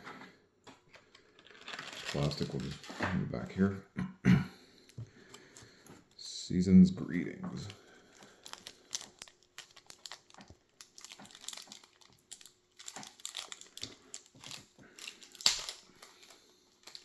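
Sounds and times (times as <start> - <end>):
paper and plastic rustling: 0.7 - 3.7, 7.0 - 17.0.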